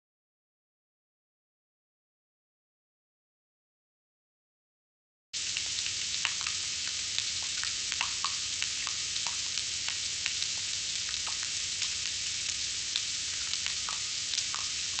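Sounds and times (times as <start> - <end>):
food deep-frying in oil: 5.4 - 15.0.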